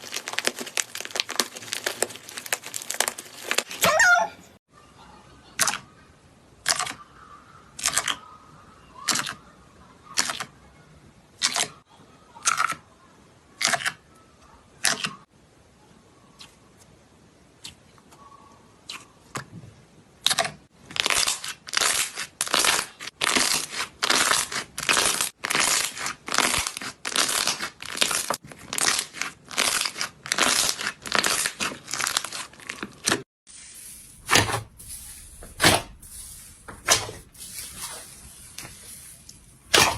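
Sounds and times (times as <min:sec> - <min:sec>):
slime tearing and crackling: 0:00.0 - 0:03.9, 0:20.9 - 0:39.9.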